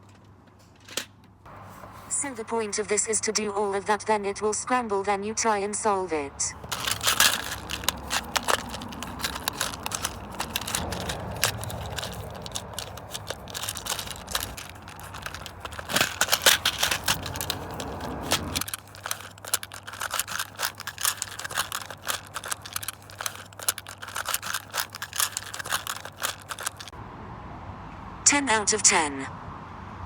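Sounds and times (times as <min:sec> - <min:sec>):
plastic toy clicking and rattling: 0:06.5 - 0:27.0.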